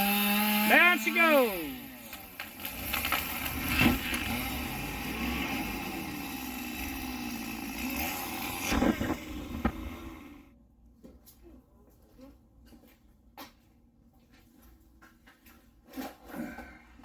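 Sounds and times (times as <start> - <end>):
tree crashing down: 2.0 - 10.3.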